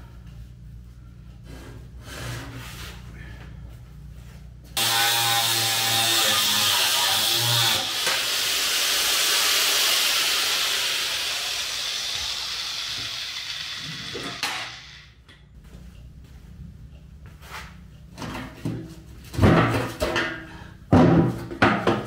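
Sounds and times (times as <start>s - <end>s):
low hum: 0.0s - 8.6s
loud steady hiss: 4.8s - 15.2s.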